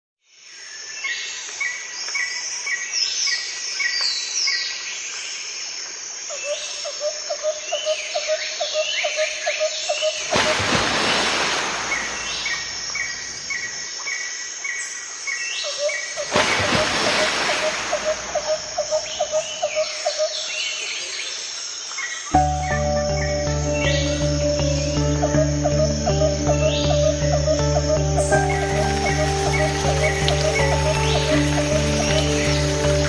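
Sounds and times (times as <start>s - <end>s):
birds singing and calling: 7.5s - 33.0s.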